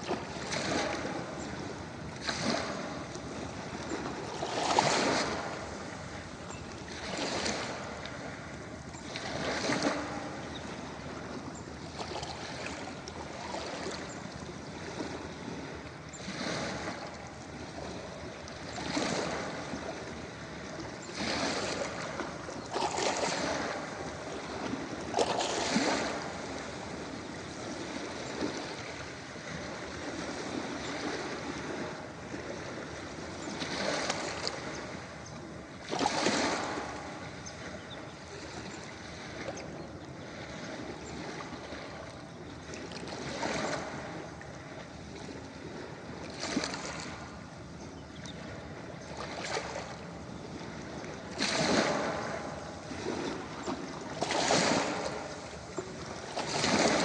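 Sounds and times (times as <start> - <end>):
ocean waves breaking on beach: 0.0 - 57.0.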